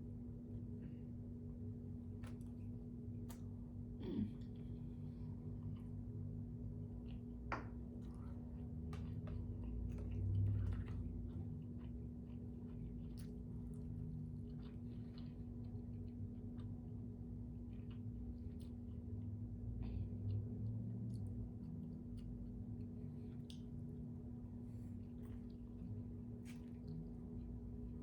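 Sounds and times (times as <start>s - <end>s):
steady low hum: 0.0s - 28.0s
person chewing food: 1.8s - 28.0s
person chewing: 6.8s - 19.2s.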